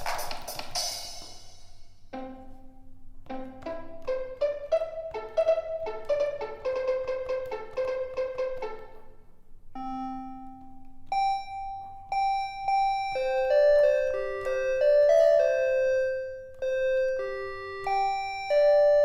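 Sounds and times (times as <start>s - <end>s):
plucked-string keyboard sample: 2.1s - 9.2s, 9.8s - 19.0s.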